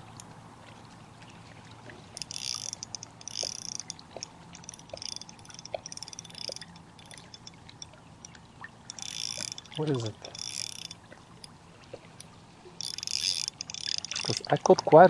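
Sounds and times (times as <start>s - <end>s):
fishing reel clicking: 2.2s - 4.0s, 4.6s - 11.5s, 12.8s - 14.8s.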